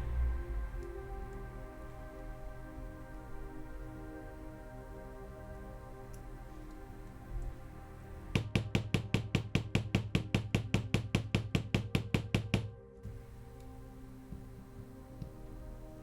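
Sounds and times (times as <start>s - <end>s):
soft background music: 0.0s - 16.0s
small hammer tapping: 8.3s - 12.7s.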